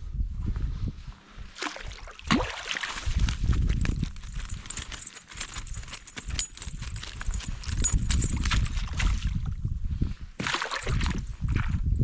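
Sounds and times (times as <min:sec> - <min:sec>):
fish flopping against boat hull: 0:10.4 - 0:11.7.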